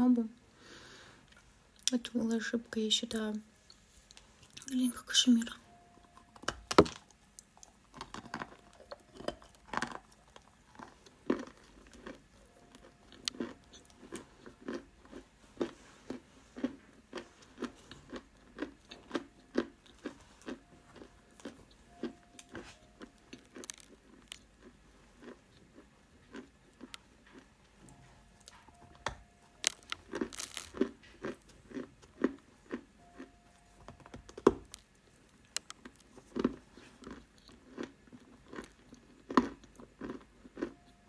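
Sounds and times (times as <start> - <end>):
crunching bites of dry clay: 29.6 - 32.8.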